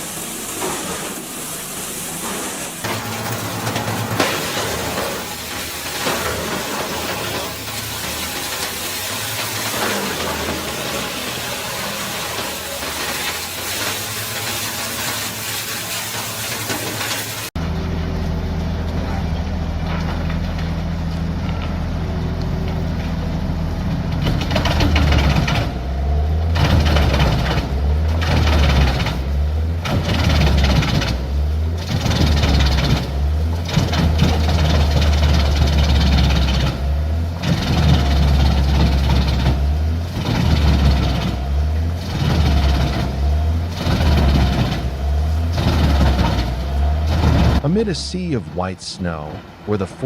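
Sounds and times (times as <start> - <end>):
wood chipper engine running: 0.0 - 49.8
wood crunching and shredding: 2.9 - 17.5.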